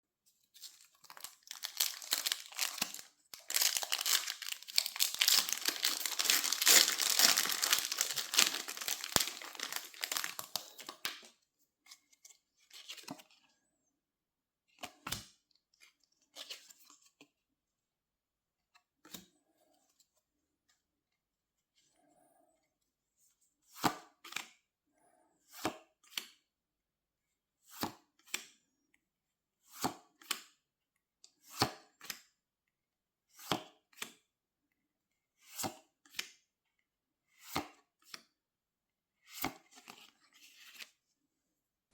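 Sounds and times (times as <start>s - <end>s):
cards being handled: 0.6s - 11.3s
foil wrapper crinkling and ripping: 0.6s - 11.3s.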